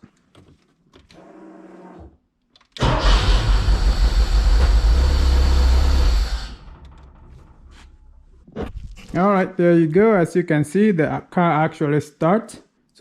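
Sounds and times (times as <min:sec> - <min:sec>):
car engine cranking and running: 0:02.8 - 0:08.5.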